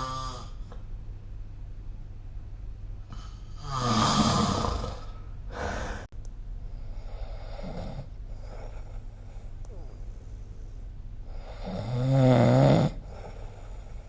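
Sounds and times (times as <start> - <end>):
person snoring: 0.0 - 0.6, 3.1 - 6.1, 11.3 - 14.0
steady low hum: 0.0 - 14.0.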